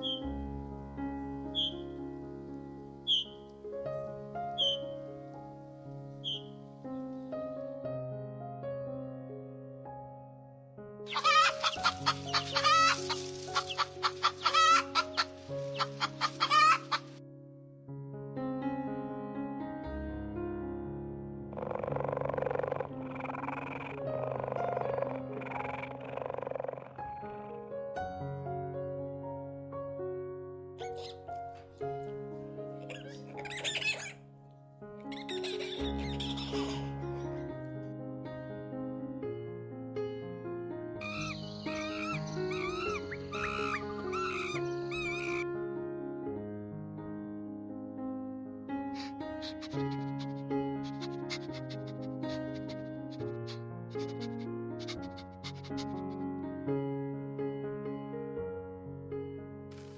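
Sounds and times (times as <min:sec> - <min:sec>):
piano music: 0:00.0 - 0:59.9
chickens clucking: 0:11.1 - 0:17.1, 0:35.1 - 0:36.9, 0:49.0 - 0:56.0.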